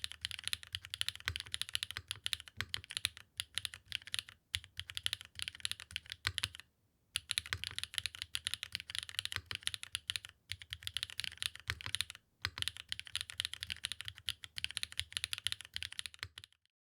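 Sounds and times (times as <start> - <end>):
fast typing on mechanical keyboard: 0.0 - 6.6, 7.2 - 16.6.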